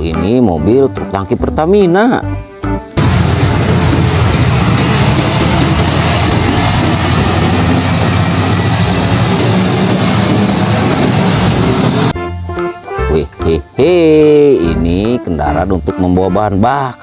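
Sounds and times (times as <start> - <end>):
heavy truck engine running: 3.0 - 12.2.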